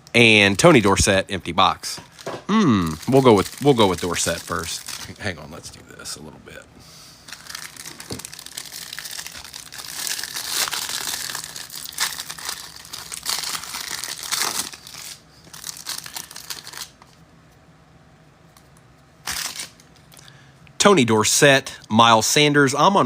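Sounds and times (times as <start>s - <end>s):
card packaging crinkling: 2.0s - 5.6s, 7.3s - 17.2s, 19.2s - 20.2s.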